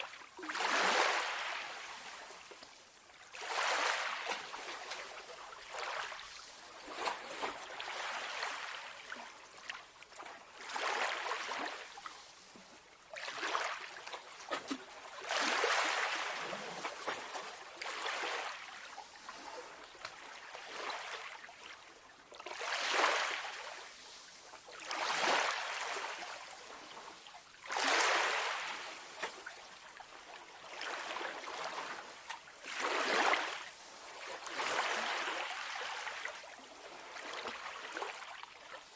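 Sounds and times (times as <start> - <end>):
calm sea waves washing in: 0.5 - 2.5, 3.3 - 9.1, 22.5 - 38.4.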